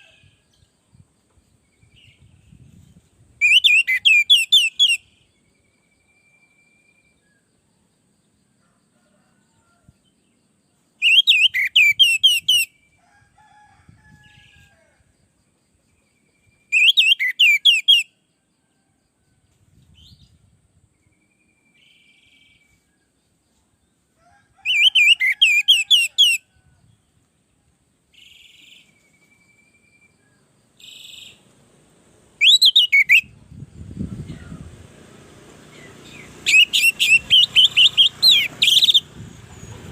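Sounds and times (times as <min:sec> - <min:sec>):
thrush singing whistled phrases: 0:03.4 - 0:05.0, 0:11.0 - 0:12.7, 0:16.7 - 0:18.1, 0:32.4 - 0:33.3, 0:36.2 - 0:39.1.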